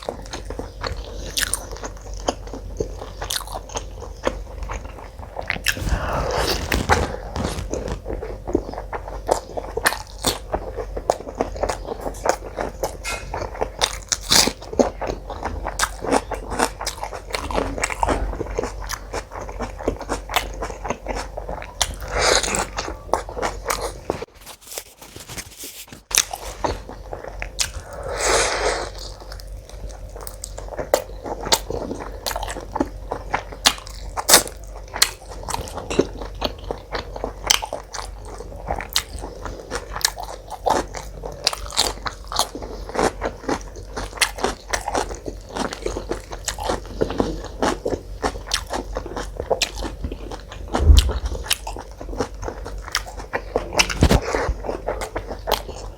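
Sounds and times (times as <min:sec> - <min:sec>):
wet chewing and smacking: 0:00.0 - 0:24.3, 0:26.1 - 0:28.0, 0:28.8 - 0:55.9
slurping sounds: 0:05.6 - 0:08.2.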